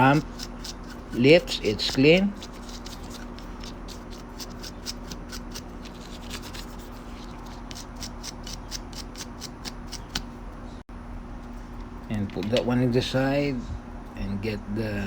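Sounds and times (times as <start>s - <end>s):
brush scrubbing metal: 0.0s - 10.2s.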